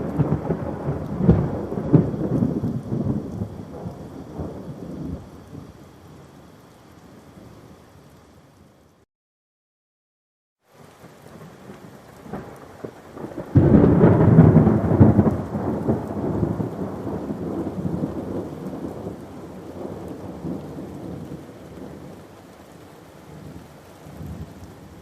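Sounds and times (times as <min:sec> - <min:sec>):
thunder clap: 0:00.0 - 0:05.2, 0:13.2 - 0:19.1
steady rain: 0:00.0 - 0:09.1, 0:10.6 - 0:25.0.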